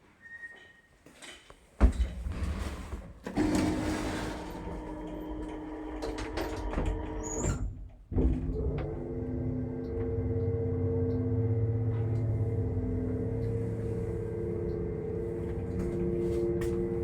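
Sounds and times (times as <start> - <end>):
lift hoist hum and whine: 8.6 - 17.0.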